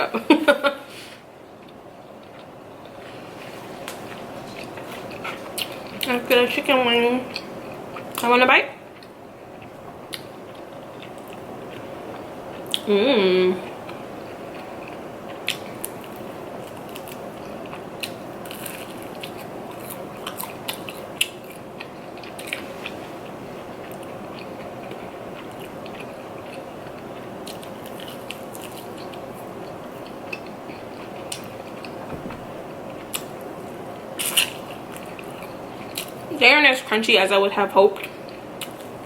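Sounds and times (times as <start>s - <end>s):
biting and chewing chicken: 1.6s - 6.1s, 8.9s - 12.9s, 13.6s - 36.3s.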